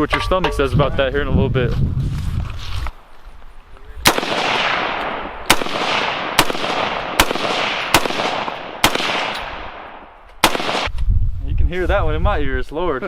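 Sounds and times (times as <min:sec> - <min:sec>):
gunshots with echo: 0:04.0 - 0:10.9.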